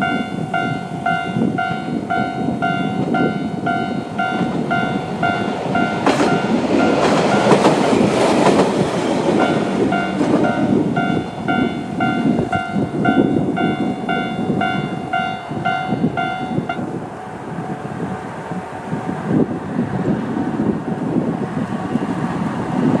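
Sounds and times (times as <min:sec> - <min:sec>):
railcar wheels clacking over rail joints: 0:00.0 - 0:17.0
crossing warning bell dinging: 0:00.0 - 0:18.0
railcar rumbling: 0:00.0 - 0:23.0.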